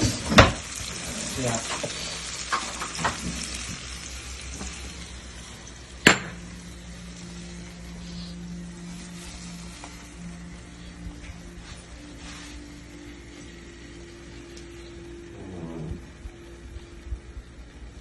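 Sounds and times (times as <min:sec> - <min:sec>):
omelette sizzling in a pan: 0:00.0 - 0:18.0
low hum: 0:02.9 - 0:18.0.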